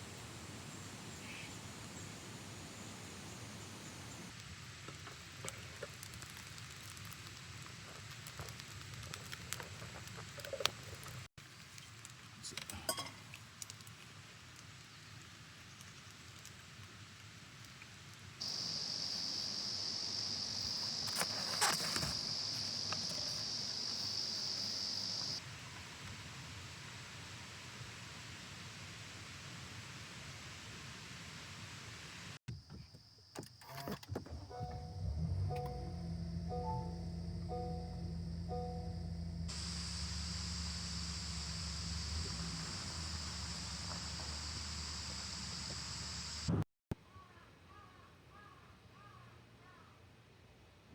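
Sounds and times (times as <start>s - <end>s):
high-pitched hiss: 18.4s - 25.4s, 36.5s - 46.6s
insect trilling: 18.4s - 25.4s
low hum: 34.4s - 46.6s.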